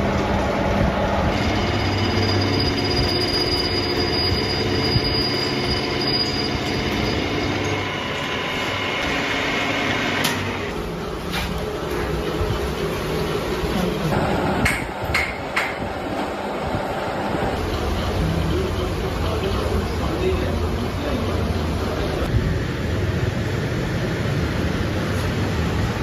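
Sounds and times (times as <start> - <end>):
machine tool whine and squeal: 0.4 - 10.7.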